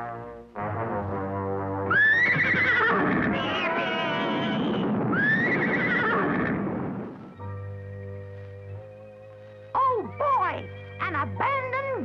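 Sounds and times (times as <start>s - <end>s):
music: 0.0s - 12.0s
cartoon horse whinnying: 1.9s - 6.7s.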